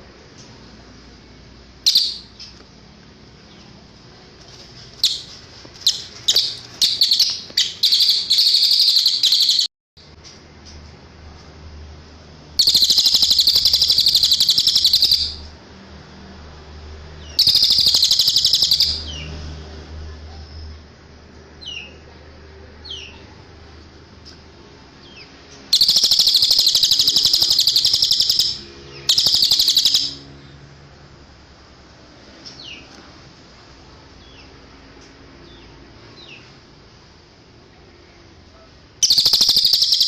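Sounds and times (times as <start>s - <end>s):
bird chirps and trills: 1.8s - 2.6s, 5.0s - 9.7s, 12.6s - 15.5s, 17.2s - 19.3s, 25.0s - 30.4s, 39.0s - 40.0s.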